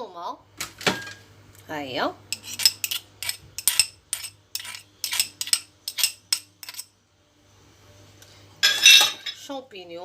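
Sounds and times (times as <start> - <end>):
utensil clinking against a bowl: 2.3 - 6.9.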